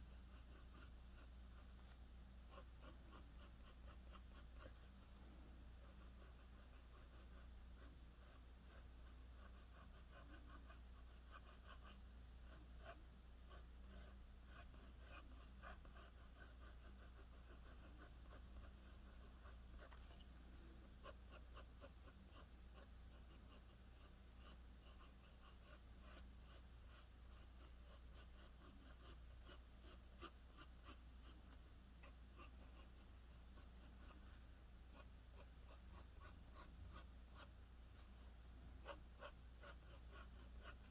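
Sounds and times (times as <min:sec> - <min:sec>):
pencil scratching on paper: 0:00.0 - 0:05.0, 0:05.8 - 0:38.2, 0:38.8 - 0:40.9.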